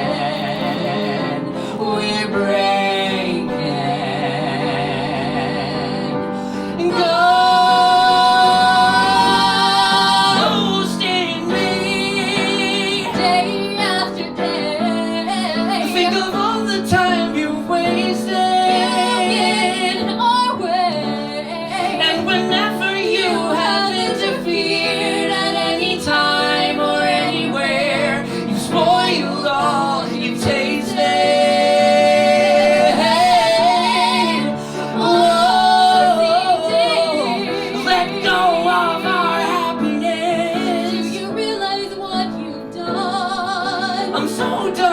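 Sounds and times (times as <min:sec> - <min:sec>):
woman singing with vibrato: 0:00.0 - 0:44.9.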